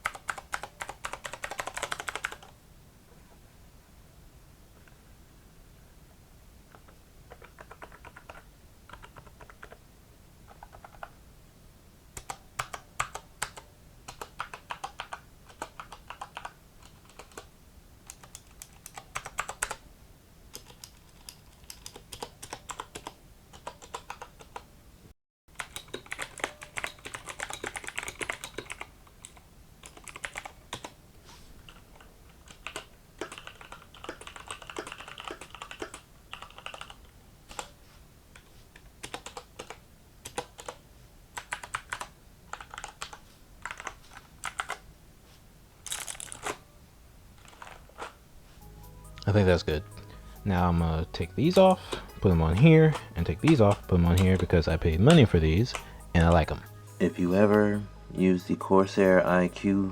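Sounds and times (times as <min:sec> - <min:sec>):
mechanical keyboard typing: 0:00.0 - 0:02.5, 0:06.8 - 0:09.8, 0:10.5 - 0:11.1, 0:12.2 - 0:17.5, 0:18.1 - 0:19.8, 0:20.5 - 0:24.7, 0:25.5 - 0:31.0, 0:31.7 - 0:37.8, 0:39.0 - 0:40.8, 0:41.4 - 0:44.8, 0:45.8 - 0:46.6, 0:47.4 - 0:48.1, 0:51.4 - 0:56.6.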